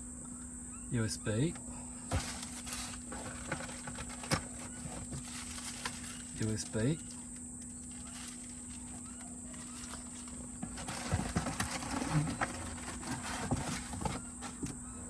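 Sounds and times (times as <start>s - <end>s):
faint steady hum: 0.0s - 15.0s
plastic packaging rustling: 1.5s - 14.8s.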